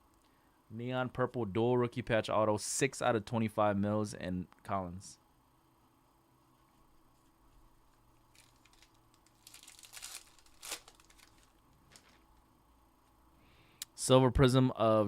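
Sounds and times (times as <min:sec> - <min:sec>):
trading cards packaging rustling: 0:08.2 - 0:12.4.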